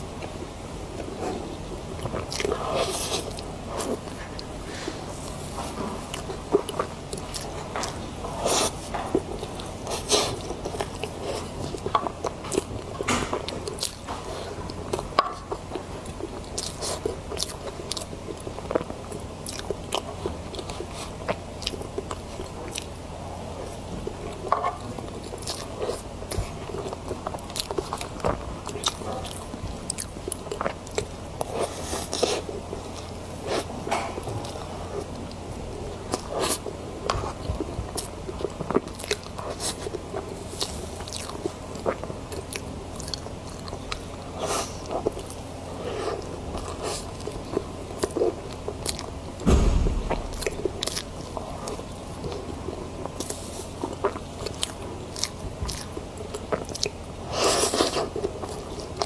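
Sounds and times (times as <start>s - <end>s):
steady low hum: 49.5s - 51.2s.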